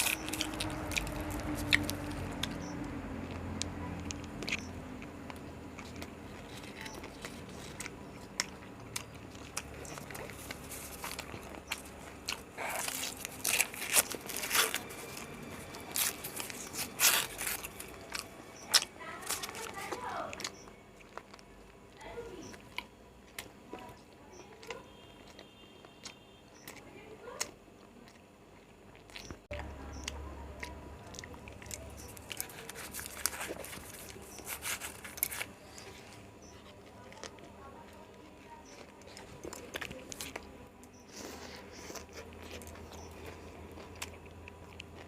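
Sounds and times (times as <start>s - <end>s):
low hum: 0.0s - 23.2s
crunchy bites and chewing: 0.0s - 45.0s.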